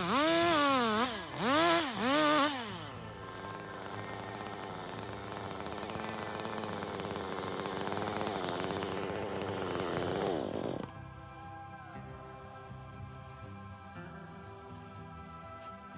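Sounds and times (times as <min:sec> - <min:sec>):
chainsaw cutting wood: 0:00.0 - 0:11.0.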